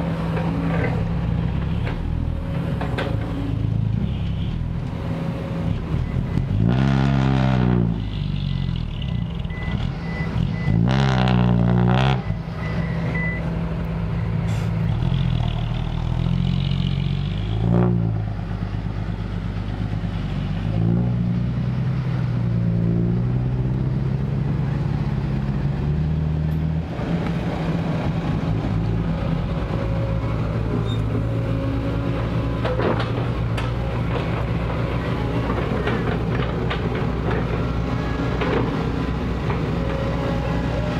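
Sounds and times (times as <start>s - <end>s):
excavator diesel engine under load: 0.0s - 40.9s.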